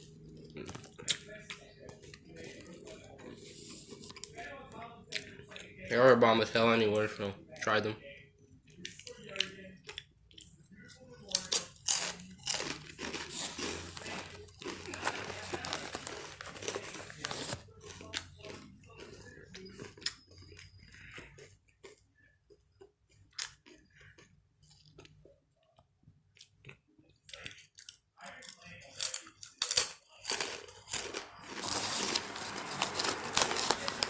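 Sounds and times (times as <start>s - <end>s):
chips crunched and chewed: 0.0s - 4.5s, 8.7s - 25.2s, 26.4s - 34.0s
bag crinkling: 11.9s - 19.4s, 30.2s - 34.0s.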